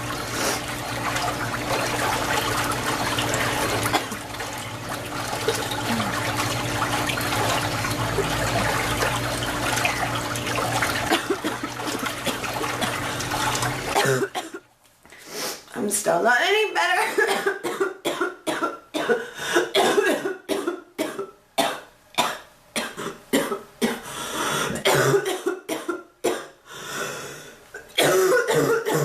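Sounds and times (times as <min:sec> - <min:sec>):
running water rushing: 0:00.0 - 0:14.3.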